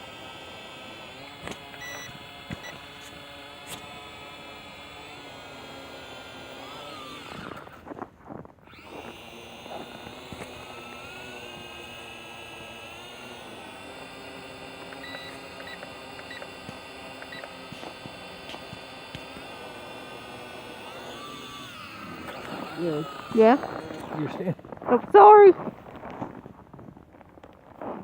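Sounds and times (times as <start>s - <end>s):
toy drone motors whining: 0.0s - 26.4s
short high beeps: 1.8s - 2.1s.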